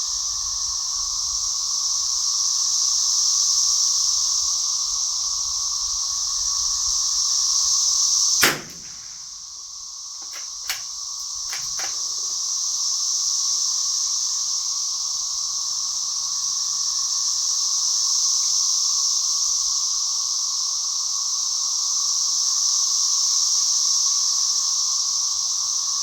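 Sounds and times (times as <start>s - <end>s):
cicadas droning: 0.0s - 26.0s
faint sharp clicks: 8.4s - 9.3s, 10.2s - 12.3s
rifle shot: 8.4s - 9.4s, 10.2s - 12.1s.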